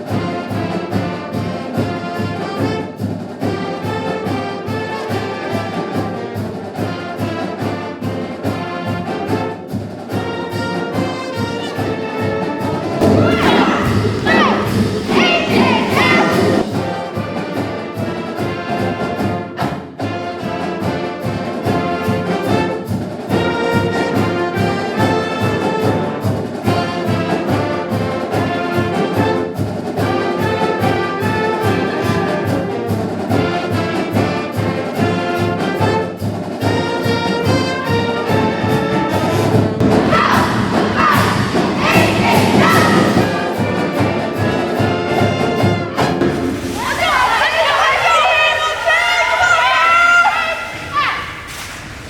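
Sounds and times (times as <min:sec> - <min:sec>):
brass-heavy music with steady beat: 0:13.0 - 0:17.6, 0:39.3 - 0:44.0.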